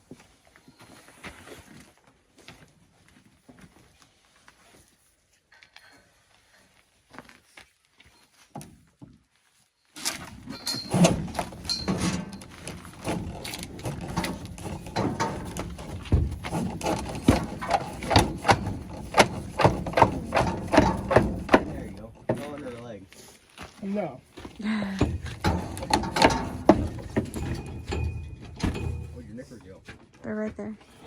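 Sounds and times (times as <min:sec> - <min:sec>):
cow knocking and clattering: 0:10.4 - 0:22.7, 0:24.4 - 0:30.1.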